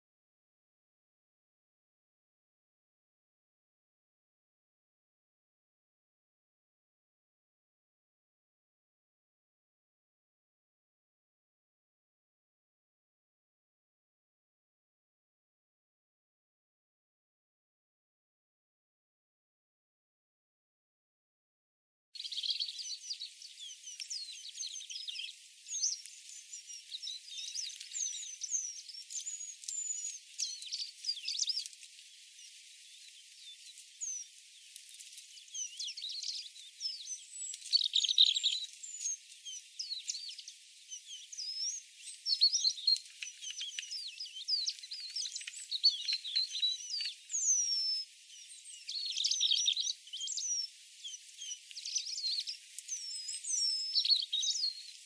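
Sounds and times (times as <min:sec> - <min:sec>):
small birds singing and chirping: 0:22.2 - 0:55.0.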